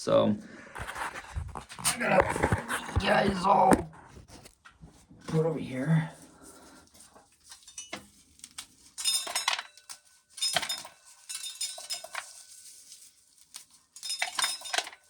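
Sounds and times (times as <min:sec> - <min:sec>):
corn kernels clattering against metal: 0:06.5 - 0:15.0.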